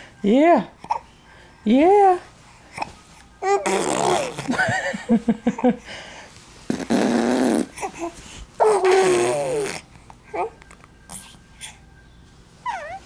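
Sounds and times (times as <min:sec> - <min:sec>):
baby grunting: 0:03.4 - 0:04.5, 0:06.7 - 0:10.5
baby making raspy vocal noises: 0:03.4 - 0:04.5, 0:06.7 - 0:10.5.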